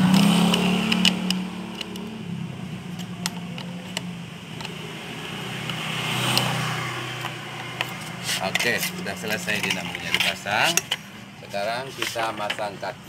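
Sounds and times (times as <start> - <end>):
engine hum: 0.0 - 11.6.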